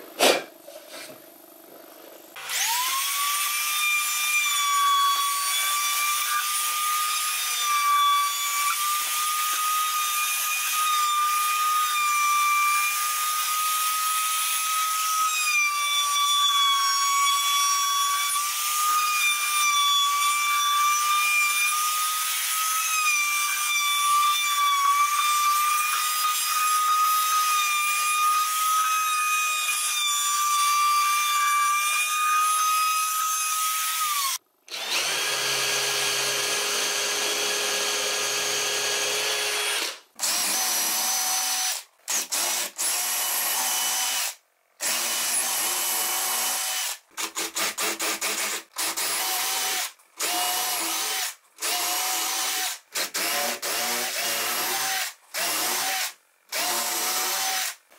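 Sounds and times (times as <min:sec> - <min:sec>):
power tool high whine: 0:33.1 - 0:41.8
power tool running on wood: 0:34.7 - 0:41.2.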